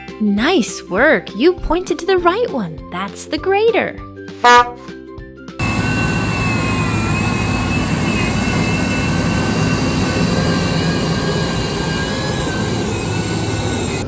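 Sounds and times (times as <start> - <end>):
diesel engine rumbling: 5.6 - 14.0
high whine: 5.6 - 14.0.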